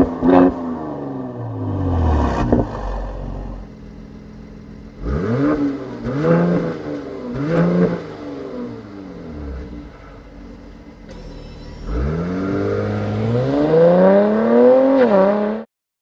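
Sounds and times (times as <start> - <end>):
exhaust crack: 0.0 - 8.2
car engine revving and idling: 0.0 - 15.7.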